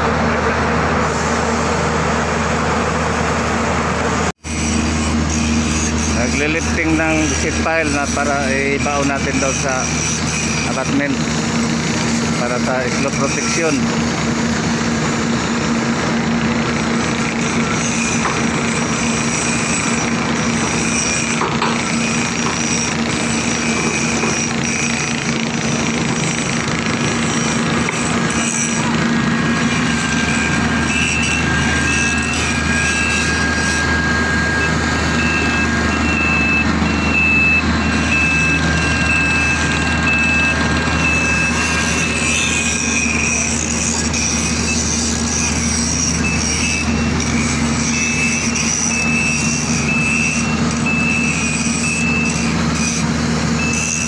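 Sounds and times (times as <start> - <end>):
diesel engine under load: 0.0 - 54.0
high broken whine: 0.0 - 54.0.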